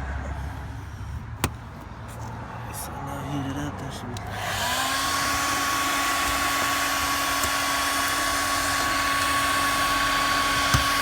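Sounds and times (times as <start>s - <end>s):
heat gun fan whining: 4.1s - 11.0s.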